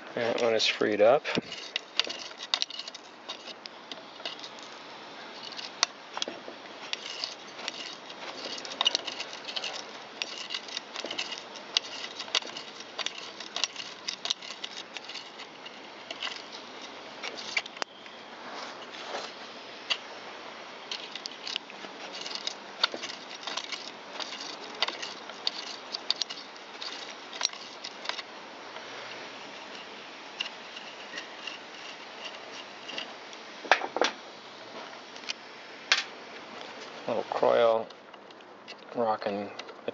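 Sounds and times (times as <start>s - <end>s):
metal tool clicking and scraping: 1.3s - 18.0s, 20.8s - 28.3s, 29.4s - 33.1s.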